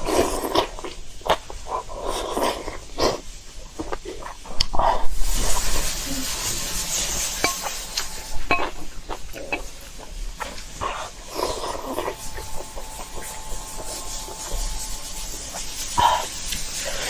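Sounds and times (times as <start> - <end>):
hiss: 0.0 - 17.0
utensils clinking against dish: 7.4 - 9.7.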